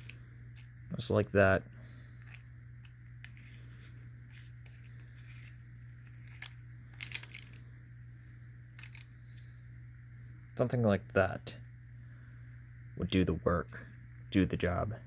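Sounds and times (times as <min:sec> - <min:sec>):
steady low hum: 0:00.0 - 0:15.0
gas mask parts clicking: 0:04.6 - 0:07.6, 0:08.7 - 0:09.1.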